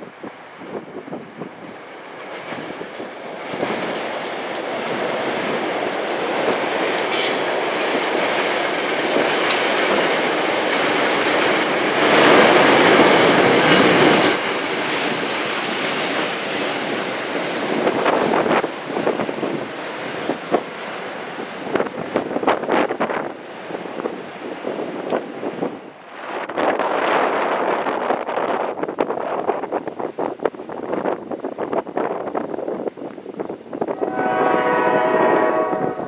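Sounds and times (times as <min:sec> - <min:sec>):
train wheels clattering over rails: 0:01.5 - 0:25.3.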